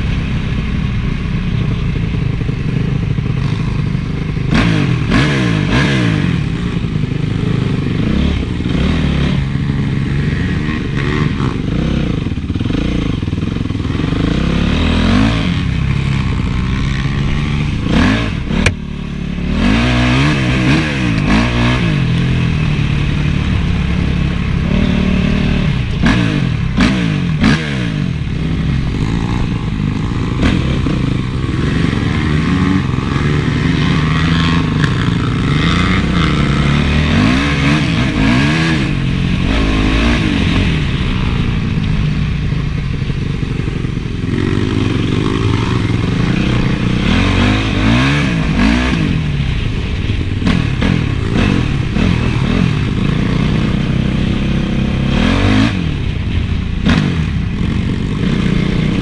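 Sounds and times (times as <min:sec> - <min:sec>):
motorcycle engine revving: 0:00.0 - 0:59.0.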